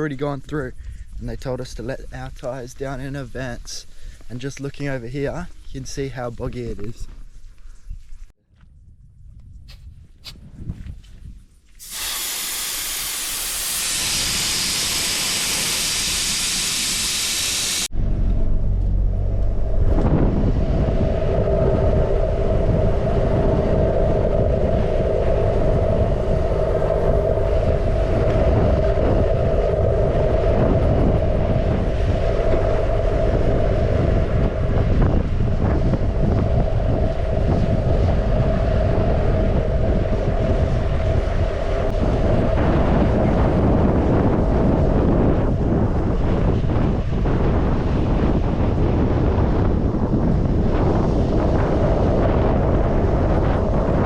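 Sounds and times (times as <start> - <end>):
air hissing from tyre valve: 11.8 - 17.9
vehicle driving rumble: 17.9 - 20.8.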